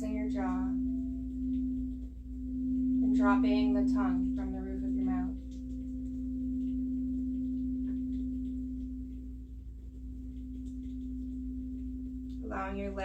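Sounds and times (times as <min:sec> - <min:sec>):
low steady hum: 0:00.0 - 0:13.0
singing bowl tone: 0:00.0 - 0:13.0.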